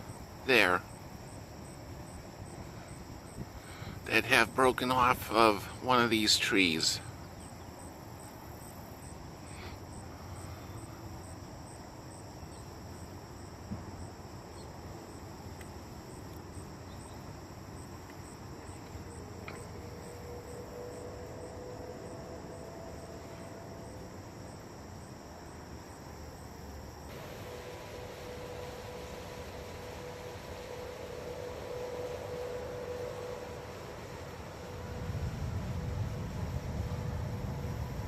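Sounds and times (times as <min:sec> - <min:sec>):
insects chirping: 0:00.0 - 0:38.0.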